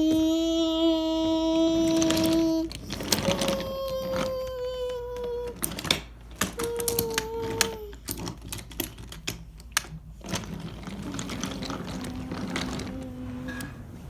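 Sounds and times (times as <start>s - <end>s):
child humming: 0.0s - 8.2s, 11.3s - 13.9s
wooden toy train pieces clacking: 1.2s - 13.8s.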